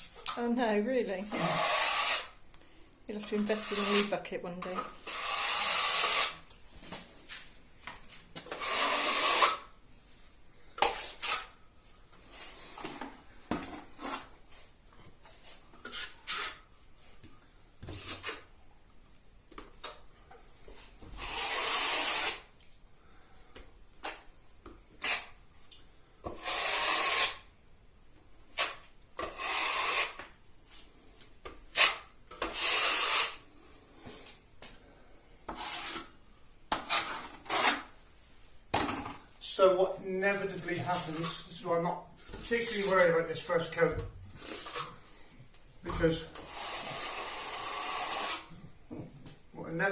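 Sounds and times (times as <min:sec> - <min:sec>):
trowel scraping plasterboard joints: 0:01.3 - 0:02.4, 0:03.2 - 0:04.1, 0:04.7 - 0:06.4, 0:08.4 - 0:09.7, 0:10.8 - 0:11.5, 0:21.1 - 0:22.5, 0:25.0 - 0:25.4, 0:26.3 - 0:27.5, 0:28.6 - 0:30.4, 0:31.7 - 0:33.4, 0:35.5 - 0:38.0, 0:44.4 - 0:45.0, 0:45.9 - 0:48.6.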